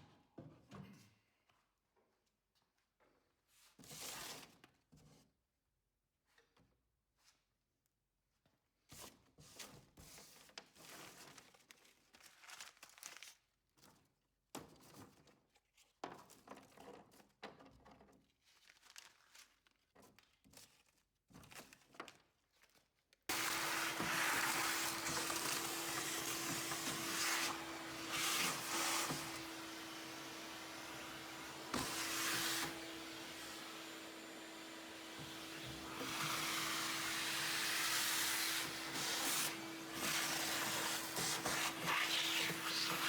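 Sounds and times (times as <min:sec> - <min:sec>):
small electric motor tool humming: 0:23.3 - 0:43.0.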